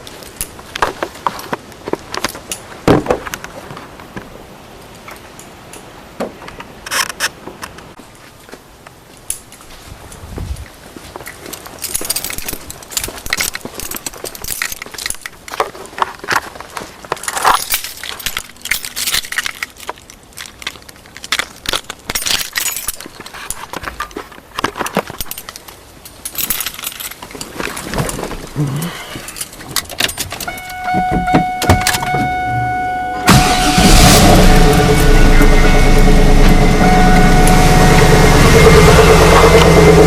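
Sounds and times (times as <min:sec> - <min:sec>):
keys jangling: 0:11.5 - 0:15.6, 0:17.2 - 0:24.1, 0:24.9 - 0:27.5, 0:29.2 - 0:30.9
steady high tone: 0:30.5 - 0:40.0.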